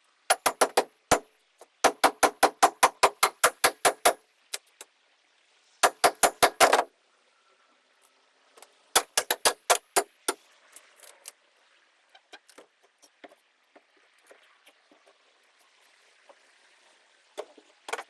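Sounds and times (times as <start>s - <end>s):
sharp metallic tool strikes: 0.3s - 1.3s, 1.9s - 4.2s, 5.8s - 6.9s, 9.0s - 10.4s.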